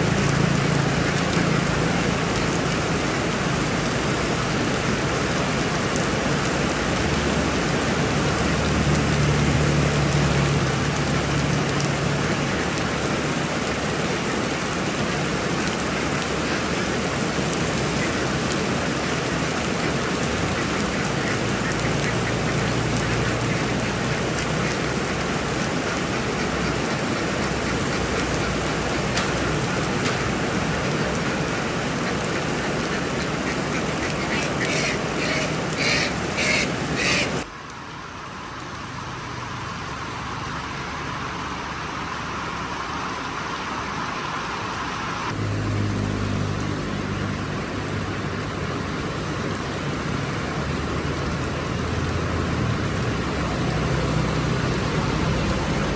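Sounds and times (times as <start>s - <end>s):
heavy rain: 0.0s - 55.9s.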